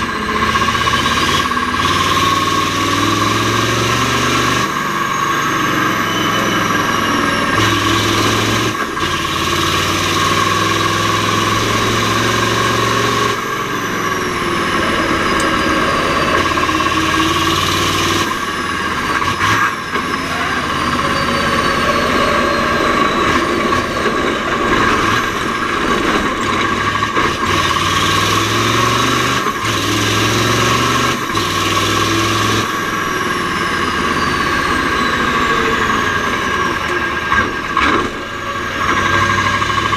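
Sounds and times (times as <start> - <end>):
diesel truck engine under load: 0.0 - 39.9.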